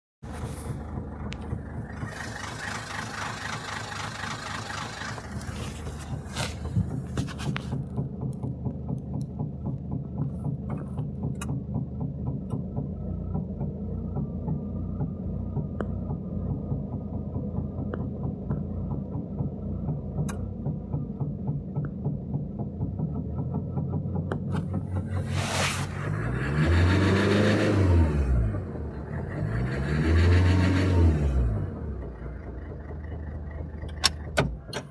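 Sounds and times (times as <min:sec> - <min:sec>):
diesel engine idling unevenly: 0:00.2 - 0:26.6
engine revving: 0:24.6 - 0:32.3
hiss: 0:25.2 - 0:26.2.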